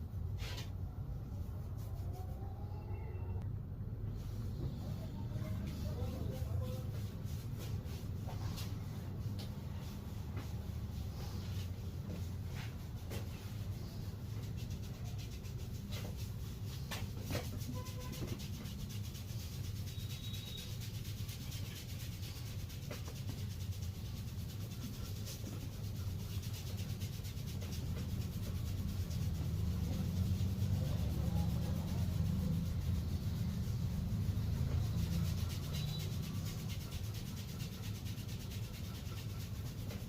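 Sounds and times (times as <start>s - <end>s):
hands rubbing skin: 5.4s - 40.0s.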